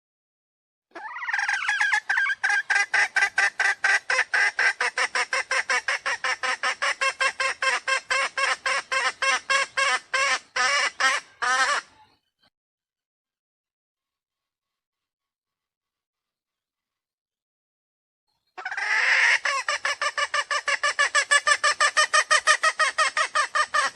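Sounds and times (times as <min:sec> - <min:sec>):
junglefowl cackling call: 0:00.9 - 0:12.0, 0:18.6 - 0:23.9.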